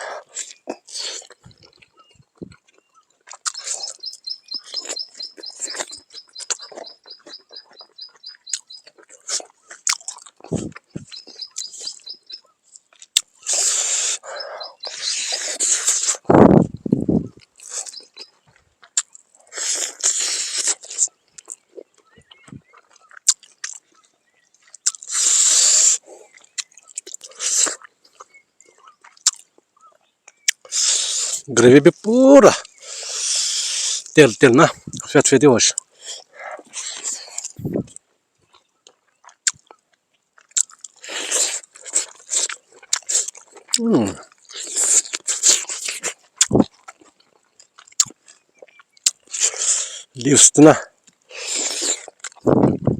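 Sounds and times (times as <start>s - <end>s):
person chewing crunchy food: 0.0s - 35.1s, 35.7s - 52.9s
bird chirping: 1.4s - 16.2s, 17.1s - 19.2s, 20.1s - 35.6s, 47.2s - 49.1s
hissing sucks or breaths: 13.4s - 16.4s, 25.1s - 26.1s, 30.7s - 31.5s, 32.8s - 34.1s.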